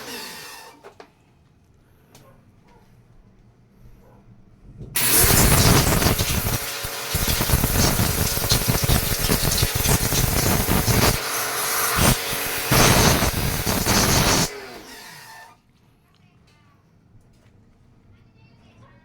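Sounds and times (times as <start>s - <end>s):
pressure washer spraying: 5.0s - 15.4s.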